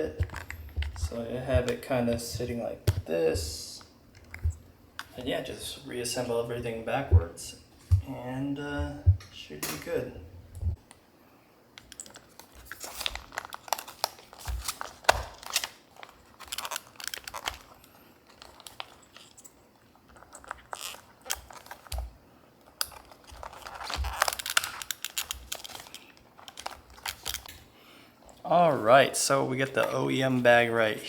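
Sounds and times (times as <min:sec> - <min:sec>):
plastic parts clicking: 0:00.2 - 0:03.1, 0:04.1 - 0:05.2, 0:11.8 - 0:19.5, 0:20.1 - 0:27.6.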